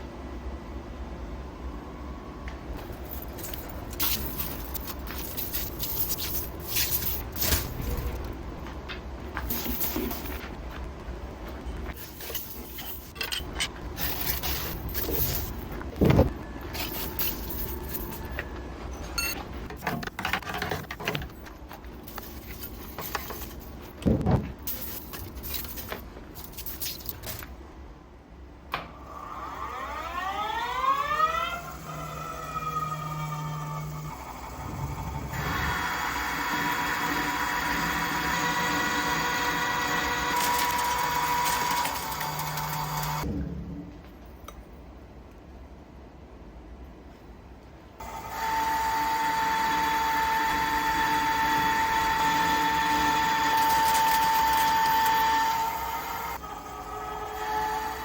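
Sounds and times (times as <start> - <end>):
machinery hum: 0.0 - 58.0
metal parts clicking and knocking: 2.8 - 27.6, 40.0 - 43.3, 53.0 - 55.4
metal scraping and clinking: 2.8 - 27.6, 39.9 - 43.3, 52.1 - 55.4
heavy thump: 15.9 - 16.4, 24.0 - 24.6
lathe spindle whine: 29.1 - 43.2, 48.0 - 58.0.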